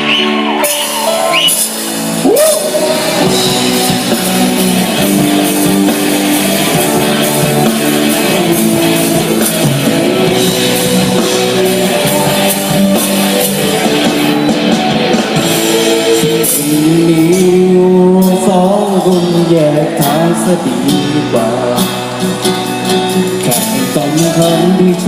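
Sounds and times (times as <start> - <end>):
drum beat: 0.0 - 17.4
guitar: 0.0 - 25.0.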